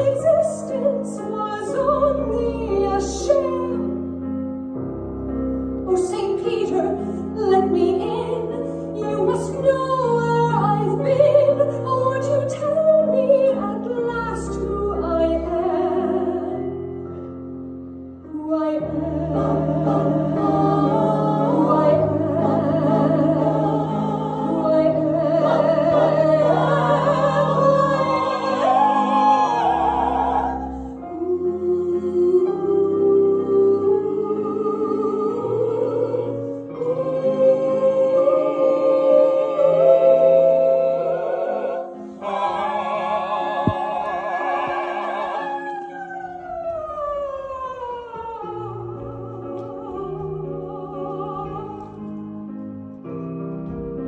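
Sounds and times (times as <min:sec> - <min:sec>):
piano: 0:00.0 - 0:54.0
operatic voice singing: 0:18.7 - 0:33.4, 0:36.8 - 0:51.9.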